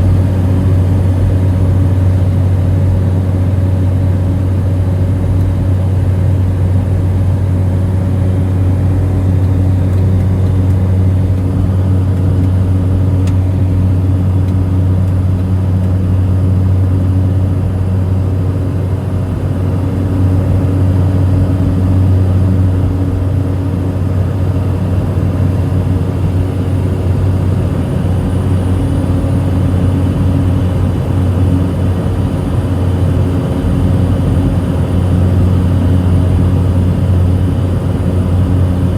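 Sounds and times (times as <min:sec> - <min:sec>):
turboprop engine droning: 0:00.0 - 0:38.9.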